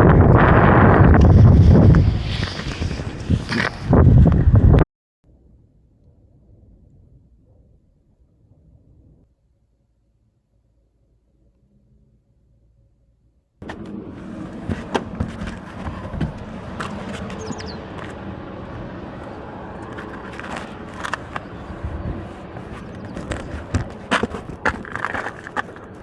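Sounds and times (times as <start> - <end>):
gusty wind on microphone: 0.0 - 4.8, 13.7 - 26.0.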